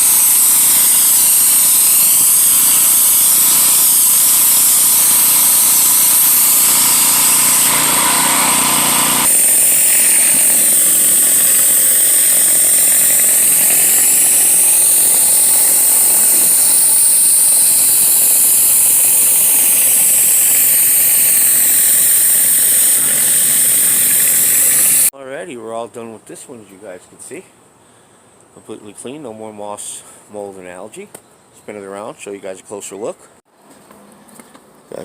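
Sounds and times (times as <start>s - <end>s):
high-pressure water spray on concrete: 0.0s - 25.1s
pressure washer engine: 0.0s - 25.1s.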